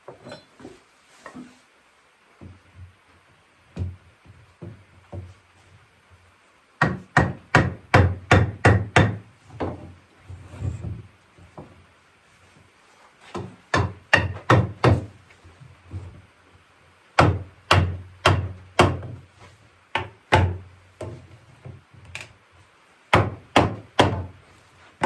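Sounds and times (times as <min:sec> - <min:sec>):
hammer knocking on wood: 0:06.8 - 0:09.9, 0:13.3 - 0:15.1, 0:17.2 - 0:19.2, 0:19.9 - 0:21.8, 0:23.1 - 0:24.3.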